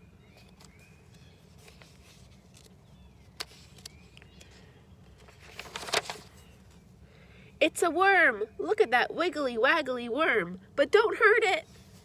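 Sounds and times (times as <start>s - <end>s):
faint bird chirps: 0.0s - 5.0s
page rustling: 0.4s - 6.8s.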